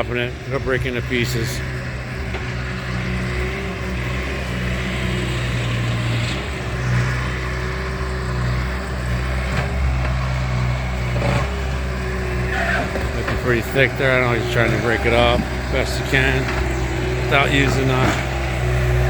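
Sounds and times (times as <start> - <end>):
construction machine engine running: 0.0 - 19.0.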